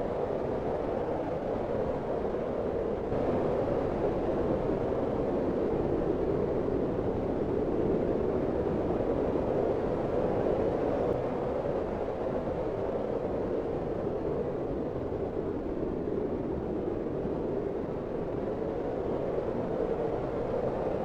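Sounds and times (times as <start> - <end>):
howling blizzard wind: 2.9 - 21.0.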